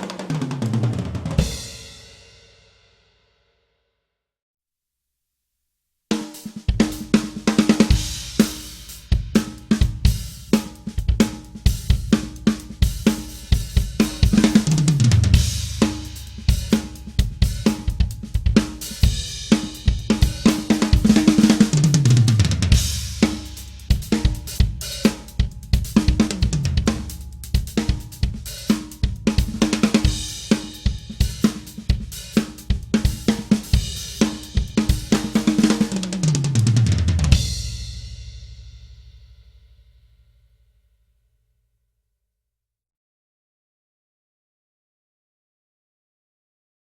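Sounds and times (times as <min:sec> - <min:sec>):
drum fills falling in pitch: 0:00.0 - 0:02.1, 0:06.7 - 0:38.8
drum kit playing a groove: 0:00.0 - 0:02.2, 0:06.2 - 0:38.9.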